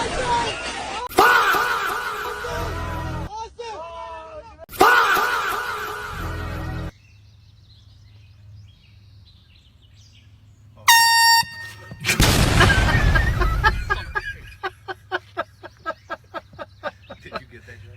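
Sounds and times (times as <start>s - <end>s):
air horn blast: 10.9s - 12.3s
quick pulses: 10.9s - 13.4s
loud noisy burst: 11.4s - 14.1s.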